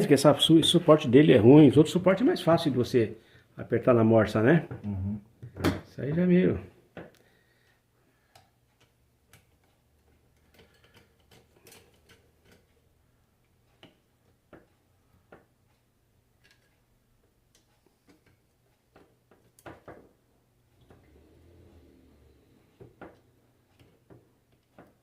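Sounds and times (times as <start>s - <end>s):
light clicks and taps of handled parts: 6.9s - 12.8s, 13.4s - 15.8s, 16.4s - 20.1s, 22.8s - 25.0s.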